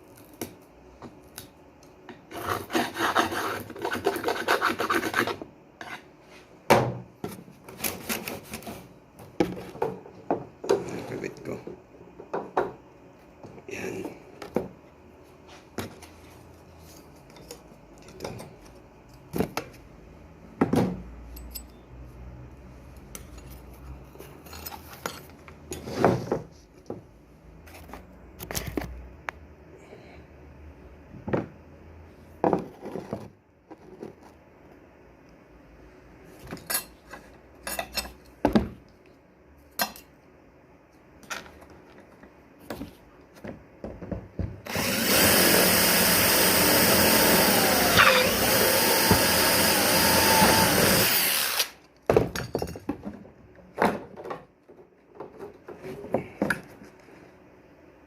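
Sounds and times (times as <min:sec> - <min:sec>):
electric drill running: 0:44.7 - 0:51.8.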